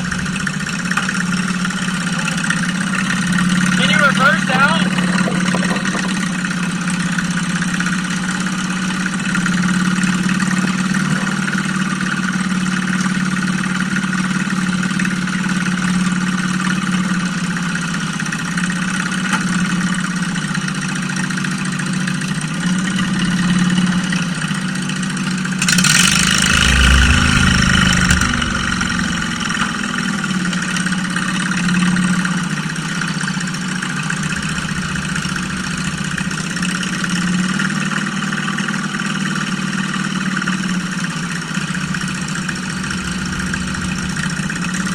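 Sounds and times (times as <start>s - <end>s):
small engine running: 25.6s - 30.8s.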